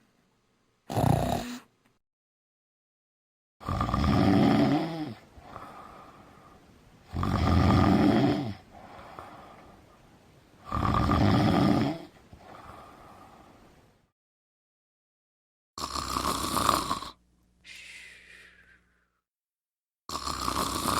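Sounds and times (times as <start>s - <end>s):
person snoring: 0.9s - 1.7s, 3.6s - 6.5s, 7.1s - 9.7s, 10.6s - 13.5s, 15.8s - 19.2s, 20.1s - 20.9s
quiet breathing: 5.0s - 7.2s, 8.2s - 10.7s, 11.9s - 14.1s, 17.6s - 19.2s.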